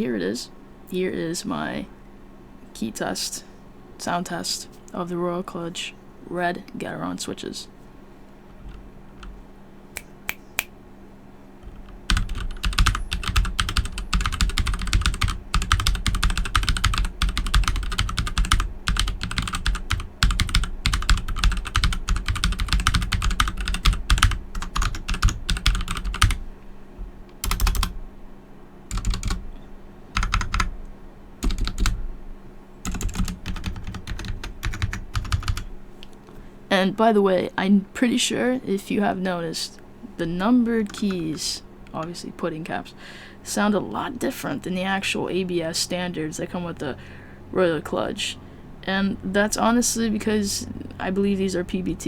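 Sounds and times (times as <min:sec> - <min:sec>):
mechanical keyboard typing: 0:11.6 - 0:26.4, 0:27.3 - 0:28.0, 0:28.9 - 0:29.4, 0:30.2 - 0:30.7, 0:31.4 - 0:32.0, 0:32.8 - 0:35.6, 0:40.9 - 0:41.3.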